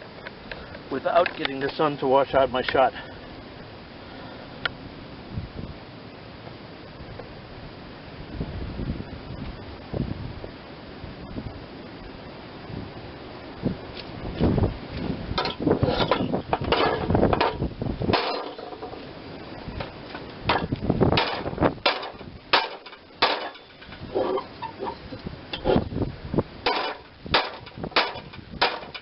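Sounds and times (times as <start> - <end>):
hammer striking sheet steel: 20.5 - 23.9, 26.6 - 29.0.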